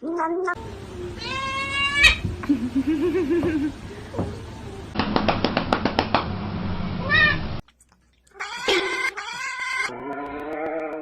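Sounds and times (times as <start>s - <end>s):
cat meowing: 0.4s - 2.2s, 7.0s - 7.4s, 8.4s - 10.8s
cat yowling: 1.1s - 2.2s, 8.4s - 9.9s.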